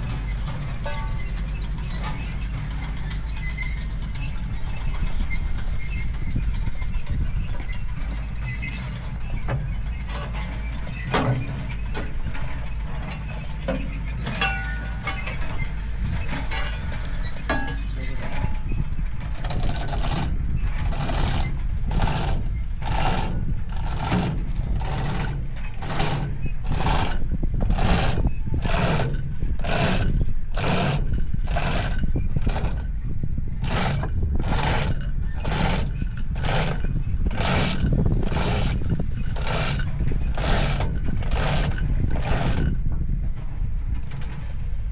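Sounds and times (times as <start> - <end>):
steady low rumble: 0.0 - 44.9
rhythmic scraping strokes: 33.6 - 42.8.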